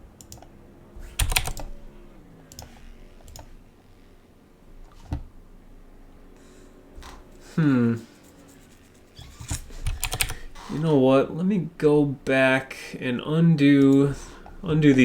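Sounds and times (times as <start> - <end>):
computer keyboard clicks: 0.2 - 0.5, 1.2 - 1.7, 9.8 - 10.4.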